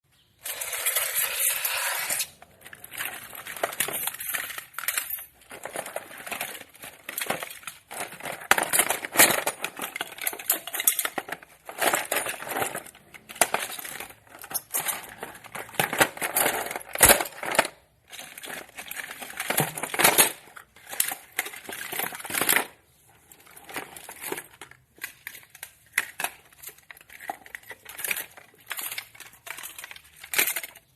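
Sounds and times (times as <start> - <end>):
objects rustling and clicking: 0.2 - 30.9.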